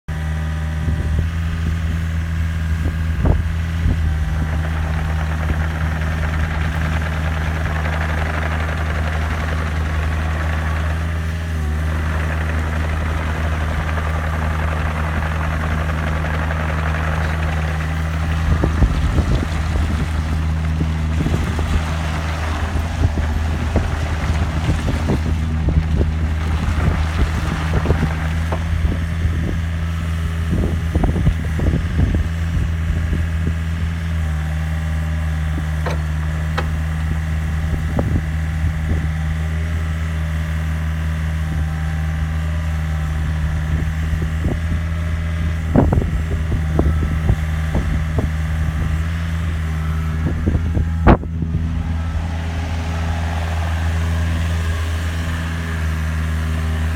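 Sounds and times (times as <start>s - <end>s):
excavator diesel engine running: 0.1s - 56.9s
machine knocks and clanks: 35.8s - 37.0s.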